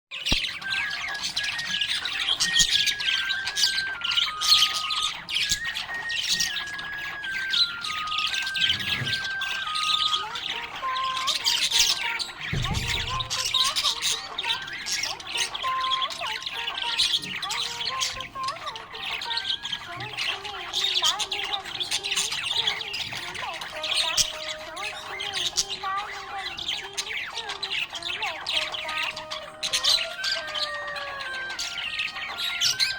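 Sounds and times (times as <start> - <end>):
background melody: 0.2 - 32.9
budgerigar chirping: 0.2 - 32.9.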